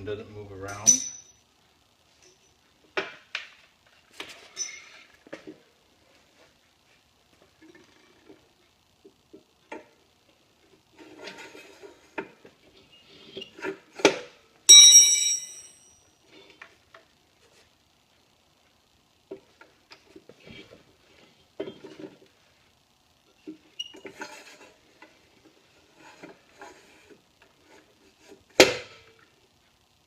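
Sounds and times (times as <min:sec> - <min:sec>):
loud ringing metallic clang: 0:14.7 - 0:15.9.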